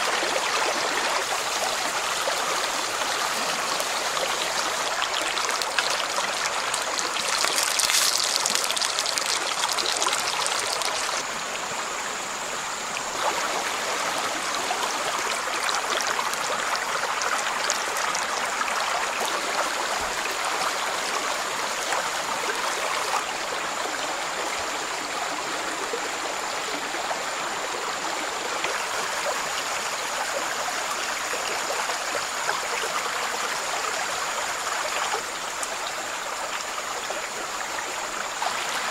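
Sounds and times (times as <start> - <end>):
stream water over rocks: 0.0 - 38.9.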